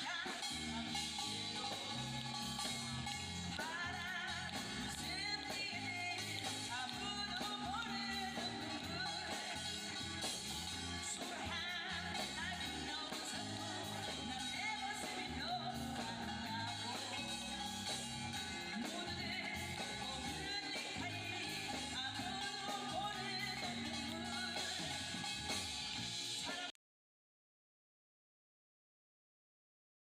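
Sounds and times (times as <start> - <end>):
song with vocal and guitar: 0.0 - 26.7.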